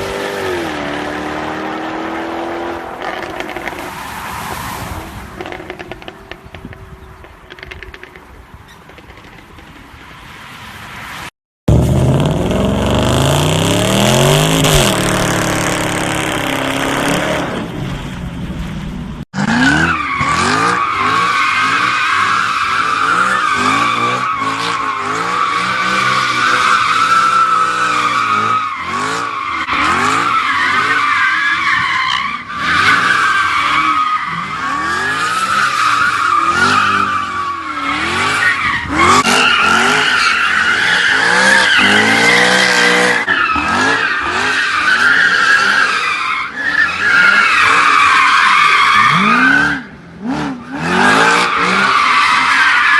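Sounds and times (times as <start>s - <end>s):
car engine revving: 11.7s - 17.8s
tyres squealing: 19.8s - 49.9s, 51.2s - 52.9s.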